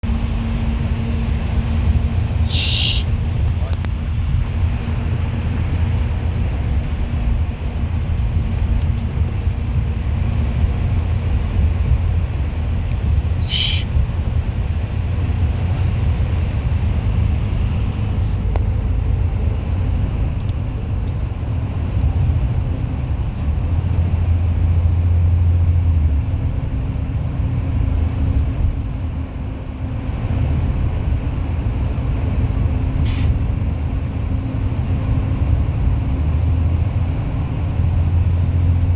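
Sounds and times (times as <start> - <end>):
bus engine and road rumble: 0.0 - 38.9.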